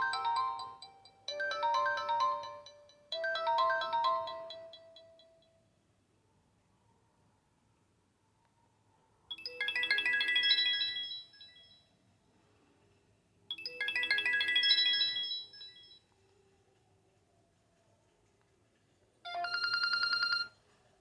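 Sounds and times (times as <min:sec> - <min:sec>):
mobile phone ringtone chiming melody: 0:00.0 - 0:05.5, 0:09.3 - 0:11.9, 0:13.5 - 0:16.0, 0:19.3 - 0:20.6.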